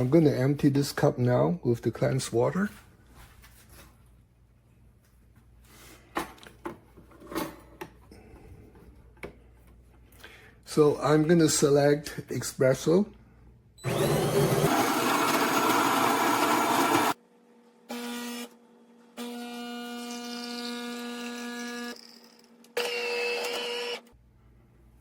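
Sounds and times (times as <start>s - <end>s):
coffee grinder running: 13.8s - 17.2s, 19.2s - 24.0s
espresso pump humming: 13.8s - 17.2s.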